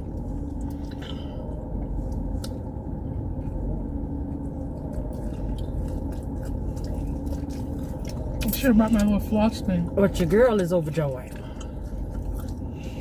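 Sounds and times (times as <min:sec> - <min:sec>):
car engine rumble in cabin: 0:00.0 - 0:13.0.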